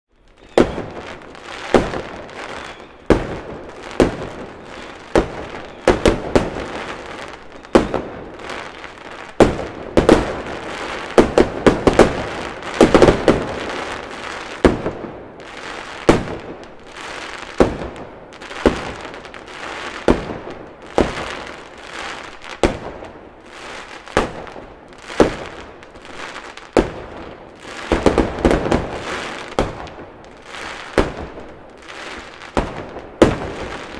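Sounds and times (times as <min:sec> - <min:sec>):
rumble of fireworks bursts: 0:00.1 - 0:33.9
fireworks crackling: 0:00.2 - 0:33.9
fireworks bangs: 0:00.3 - 0:33.9.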